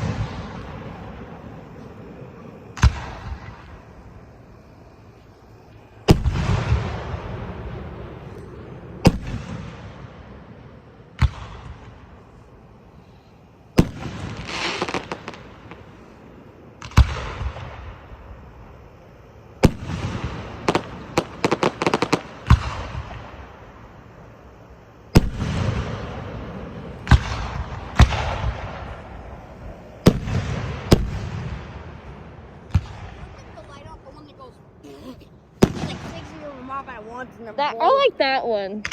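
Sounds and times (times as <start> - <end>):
firework shells bursting: 34.8 - 36.9
string of firework cracks: 35.0 - 36.6.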